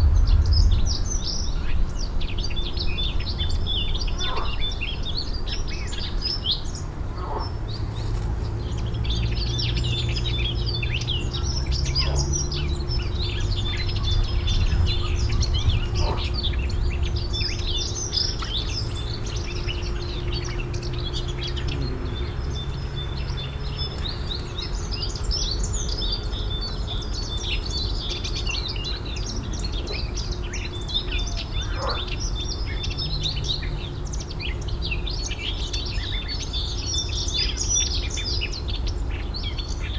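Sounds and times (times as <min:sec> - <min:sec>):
low steady rumble: 0:00.0 - 0:35.8
songbirds chirping and singing: 0:00.0 - 0:39.9.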